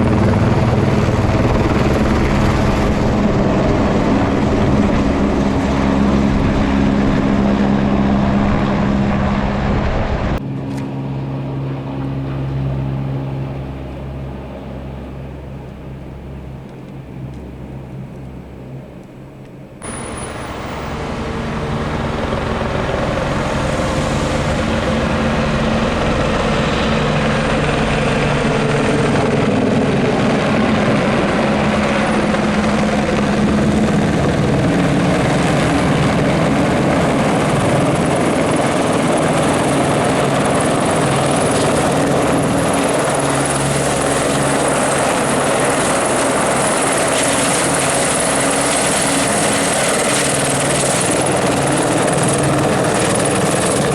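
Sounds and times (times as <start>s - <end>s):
helicopter running: 0.0s - 53.9s.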